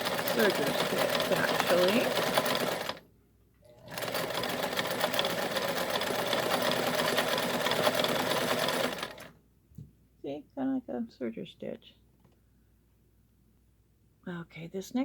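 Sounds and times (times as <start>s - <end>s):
sewing machine running: 0.0s - 3.0s, 3.7s - 9.3s.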